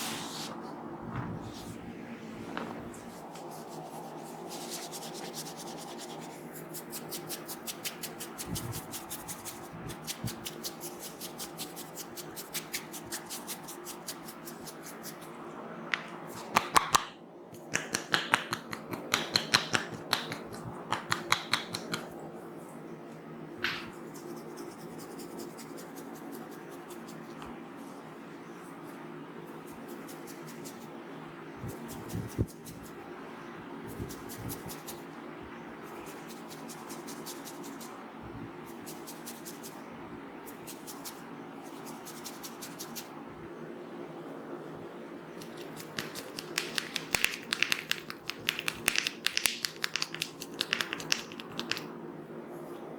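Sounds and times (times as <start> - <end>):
hands rubbing hair: 0.0 - 0.7, 2.6 - 15.3, 29.5 - 30.9, 45.4 - 51.9
sharp clicks and snaps: 45.4 - 51.9.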